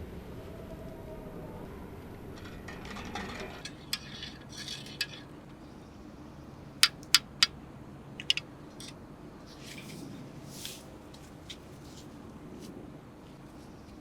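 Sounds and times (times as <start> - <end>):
camp gear clicking: 6.8 - 7.5.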